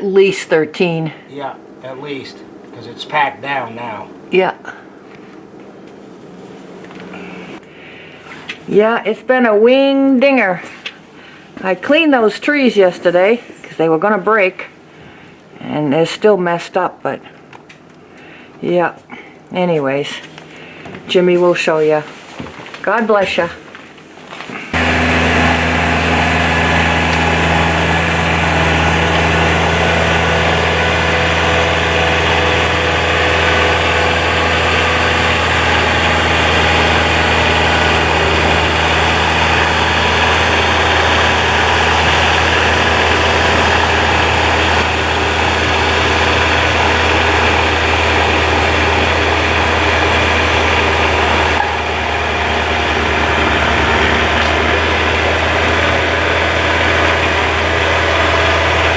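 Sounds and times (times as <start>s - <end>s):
tractor diesel engine running: 5.0s - 7.7s, 24.7s - 58.9s.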